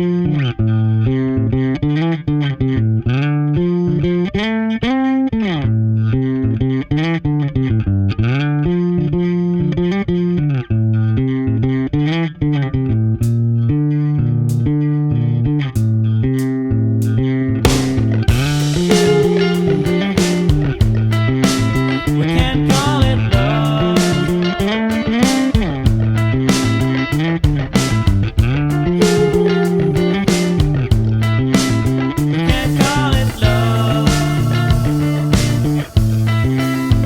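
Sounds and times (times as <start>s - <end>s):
guitar riff: 0.0s - 37.0s
drum hits: 17.7s - 24.4s, 25.2s - 29.4s, 30.3s - 37.0s.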